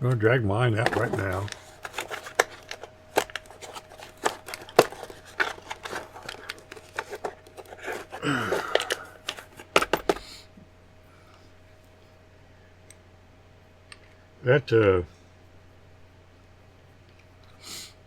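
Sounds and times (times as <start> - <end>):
hands handling packaging: 0.7 - 10.3.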